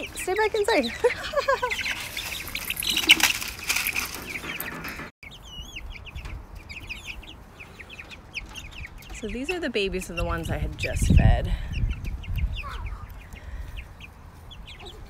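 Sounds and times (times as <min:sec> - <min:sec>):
chicks peeping: 0:00.0 - 0:15.0
wings flapping and scuffling: 0:01.4 - 0:05.1.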